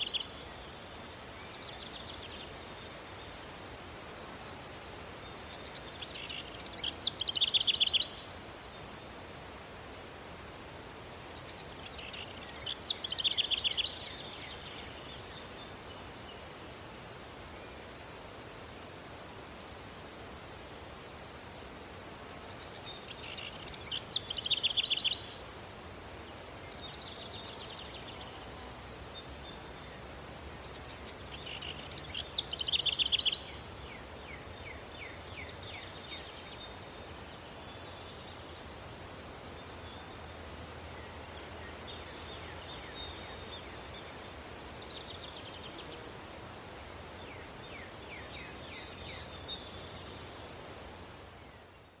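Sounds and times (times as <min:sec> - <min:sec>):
birds singing: 0:00.0 - 0:09.6, 0:11.4 - 0:18.9, 0:22.3 - 0:25.4, 0:30.6 - 0:38.7, 0:39.4 - 0:50.6.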